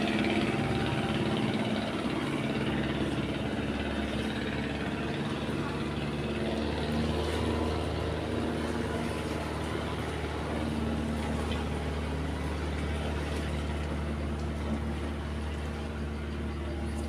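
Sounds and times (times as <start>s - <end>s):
engine running steadily: 0.0s - 17.0s.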